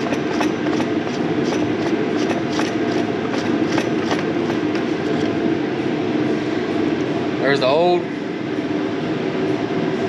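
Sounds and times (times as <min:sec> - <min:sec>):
metal clicks and scrapes: 0:00.0 - 0:05.4
steady low hum: 0:00.0 - 0:10.0.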